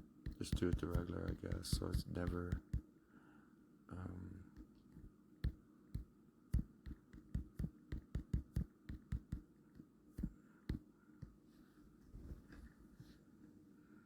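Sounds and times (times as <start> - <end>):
faint steady hum: 0.0 - 14.0
fingers tapping keys: 0.3 - 2.8, 6.5 - 9.4.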